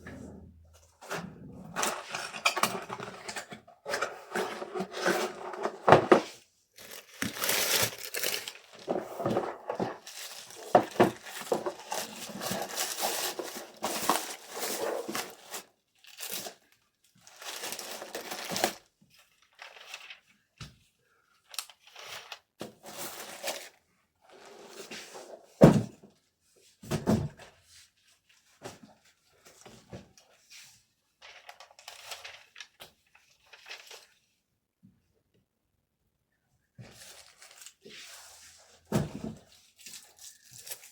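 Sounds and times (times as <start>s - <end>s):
packaging crinkling and tearing: 6.8s - 20.2s, 39.7s - 40.9s.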